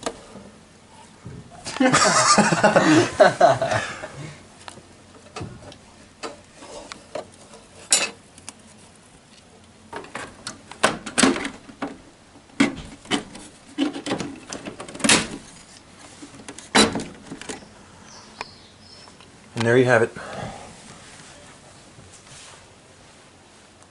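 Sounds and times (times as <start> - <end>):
hard parts clicking and knocking: 9.9 - 17.6.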